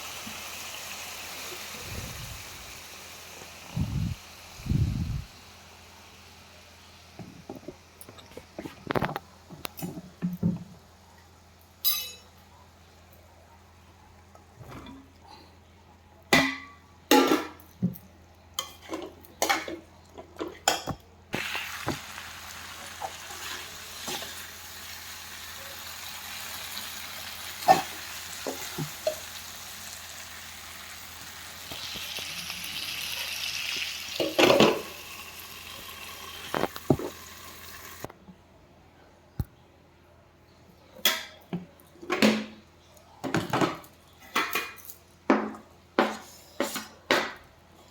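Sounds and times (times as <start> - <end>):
frying sizzle: 0.0 - 9.5, 21.4 - 38.1.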